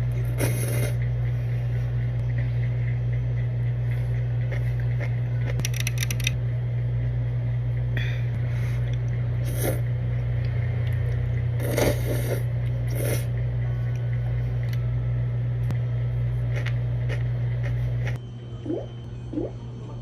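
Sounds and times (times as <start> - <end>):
steady low hum: 0.0 - 20.0
person chewing crunchy food: 16.4 - 18.2.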